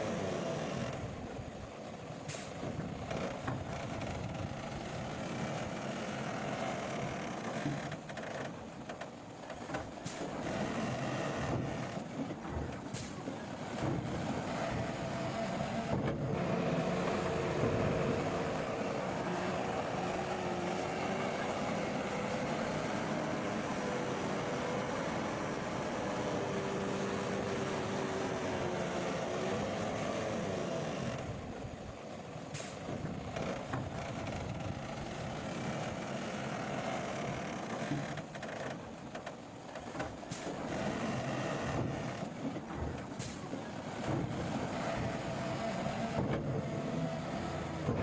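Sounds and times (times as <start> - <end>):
bulldozer diesel engine: 0.0 - 48.0.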